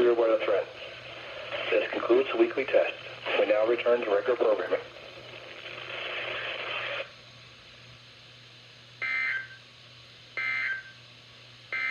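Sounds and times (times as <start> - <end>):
radio static: 0.0 - 7.1.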